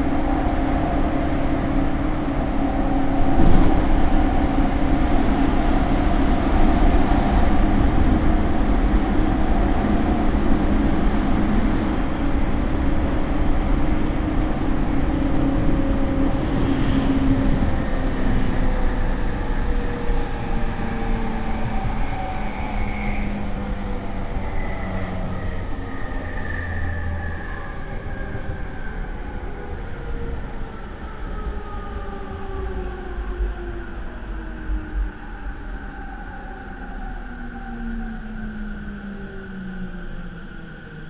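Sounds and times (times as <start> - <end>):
train wheels on rail: 0.0 - 31.1.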